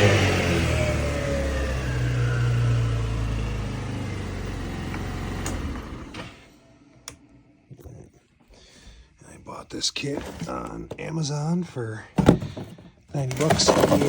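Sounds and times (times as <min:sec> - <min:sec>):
scooter engine running: 0:00.0 - 0:06.9.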